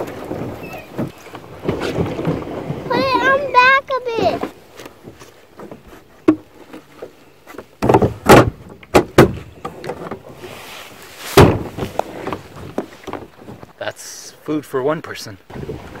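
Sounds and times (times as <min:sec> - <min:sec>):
hard knocks and thumps: 0:07.7 - 0:10.2, 0:11.3 - 0:13.6.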